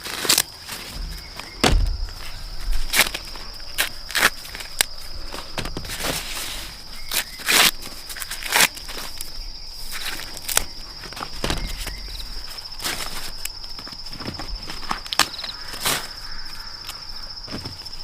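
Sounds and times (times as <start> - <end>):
insects chirring: 0.0 - 18.0
rustles and crackles: 0.0 - 18.0
footsteps: 0.6 - 6.8.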